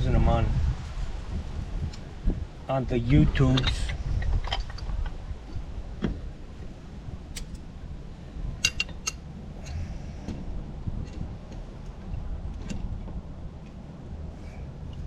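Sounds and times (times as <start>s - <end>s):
low steady hum: 0.0s - 15.0s
metal fittings clinking: 8.6s - 9.8s.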